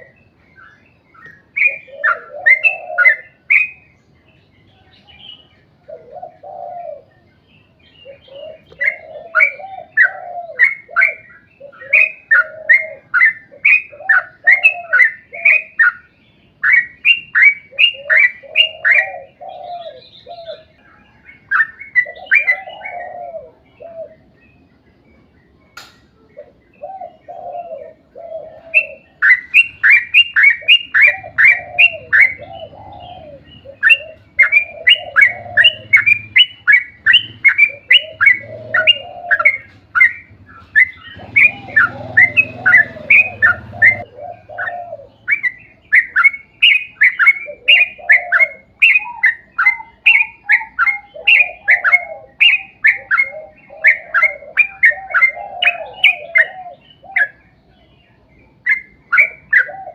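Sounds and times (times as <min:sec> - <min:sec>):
bulbul singing sharp notes: 0:28.8 - 0:44.1.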